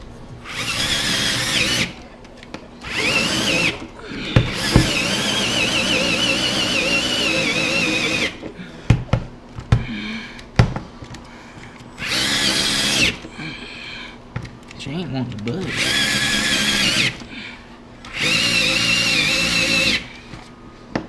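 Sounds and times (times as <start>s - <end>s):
power drill with hole saw: 0.4s - 2.0s, 2.8s - 8.4s, 12.0s - 13.2s, 15.6s - 17.3s, 18.1s - 20.2s
sharp knocks: 4.4s - 5.1s.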